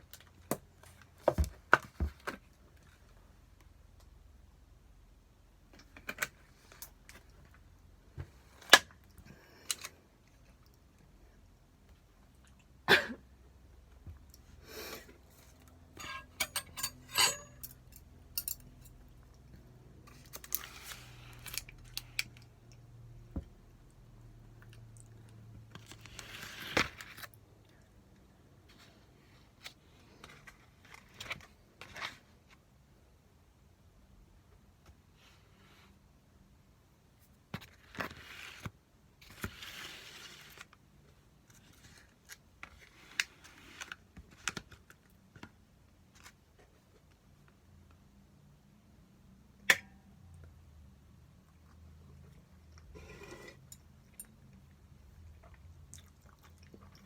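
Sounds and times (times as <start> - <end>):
utensils clinking on dishes: 15.9 - 18.9.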